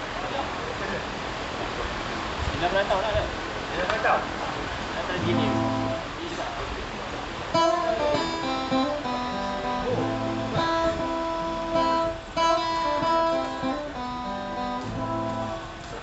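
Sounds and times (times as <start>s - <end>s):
acoustic guitar strumming chords: 5.2s - 6.1s, 7.5s - 16.0s.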